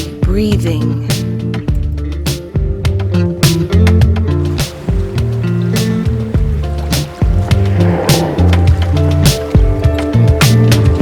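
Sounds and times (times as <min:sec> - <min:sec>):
held bass notes: 0:00.1 - 0:11.0
drum beat: 0:03.4 - 0:11.0.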